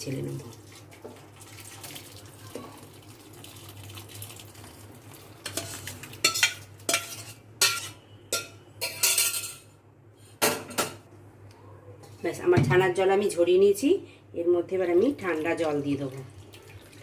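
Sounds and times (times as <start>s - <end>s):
metal spoon scraping a pan: 5.4s - 9.6s.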